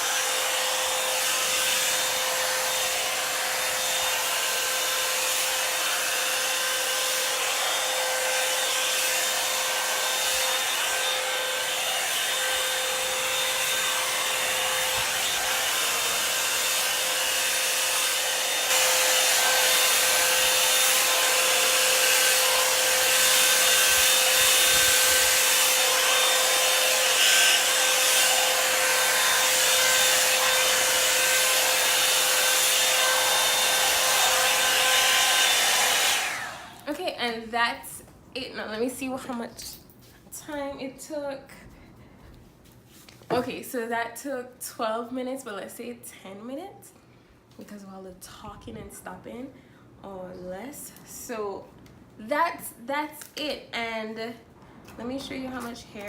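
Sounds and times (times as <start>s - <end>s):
hair dryer blowing air: 0.0s - 37.0s.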